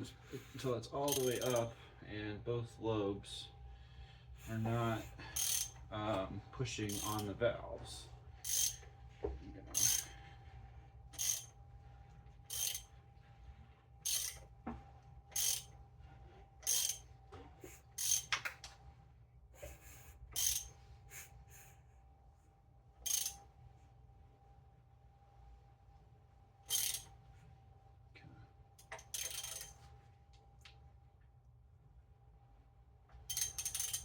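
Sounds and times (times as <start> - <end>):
faint steady hum: 0.0 - 34.0
ratchet wrench clicking: 1.1 - 1.7, 5.3 - 5.8, 6.9 - 7.3, 8.4 - 8.9, 9.7 - 10.2, 11.2 - 11.5, 12.5 - 12.9, 14.1 - 14.4, 15.3 - 15.7, 16.6 - 17.0, 18.0 - 18.5, 20.4 - 20.7, 23.0 - 23.4, 26.7 - 27.1, 28.8 - 29.8, 33.3 - 34.0.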